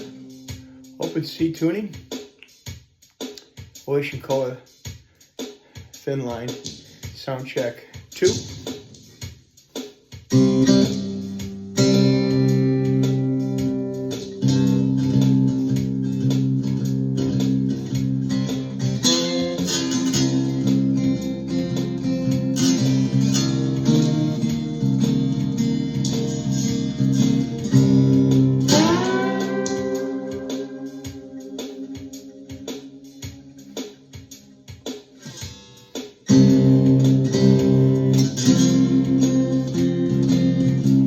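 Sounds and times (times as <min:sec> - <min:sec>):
slide guitar playing: 0:10.3 - 0:34.5, 0:35.2 - 0:41.0.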